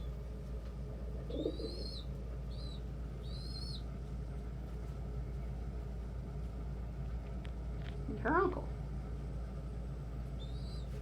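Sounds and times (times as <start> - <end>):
young pigeon begging squeals: 1.3 - 3.9, 10.4 - 11.0.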